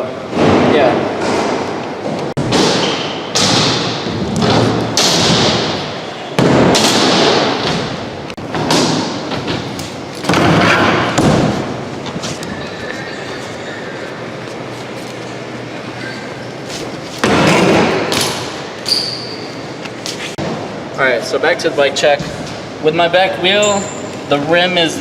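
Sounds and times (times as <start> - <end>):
bike thuds and hits: 2.4 - 11.8
bike wheels rolling and scraping: 7.2 - 20.4.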